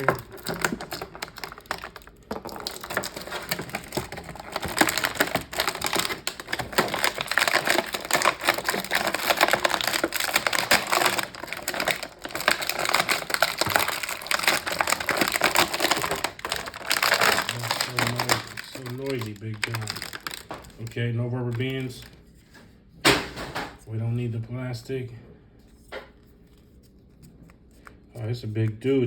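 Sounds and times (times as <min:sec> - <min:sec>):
plastic packaging crinkling: 0:00.0 - 0:22.5.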